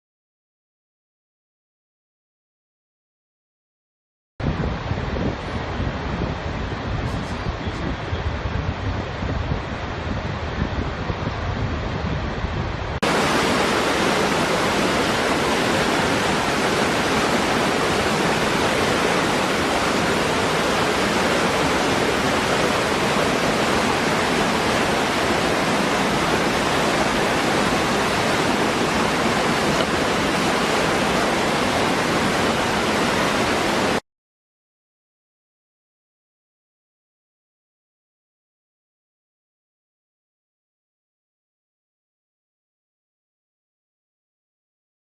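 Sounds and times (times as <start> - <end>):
wind noise on microphone: 4.4 - 34.0
waterfall rushing: 13.0 - 34.0.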